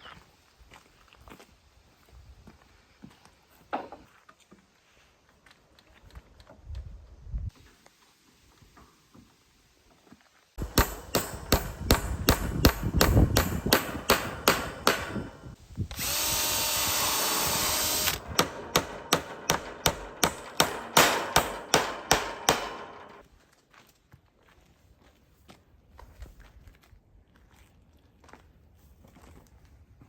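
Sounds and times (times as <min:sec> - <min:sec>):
hammer strikes on timber: 0:10.6 - 0:15.6, 0:17.7 - 0:23.2
power tool running: 0:10.6 - 0:23.2.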